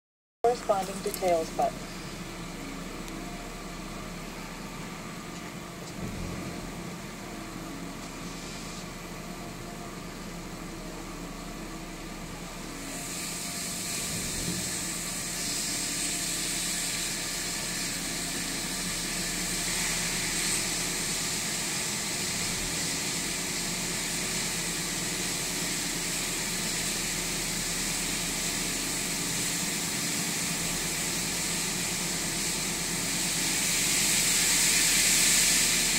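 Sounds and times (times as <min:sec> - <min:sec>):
engine idling roughly: 0:00.5 - 0:35.9
steady hiss: 0:12.8 - 0:35.9.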